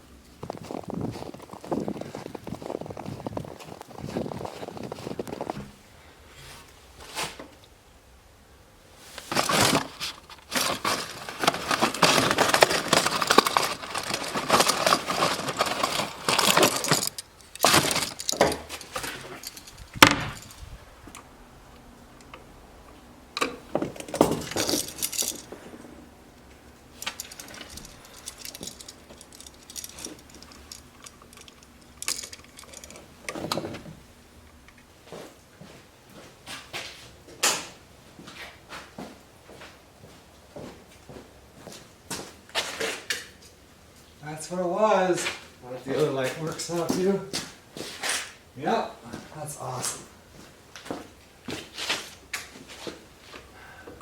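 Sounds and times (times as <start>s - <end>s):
metal parts and wires rattling: 0.4s - 5.6s, 9.2s - 20.8s, 23.4s - 25.9s, 27.0s - 34.8s
sharp clicks and clinks: 11.7s - 21.2s, 23.4s - 25.5s, 27.0s - 33.6s.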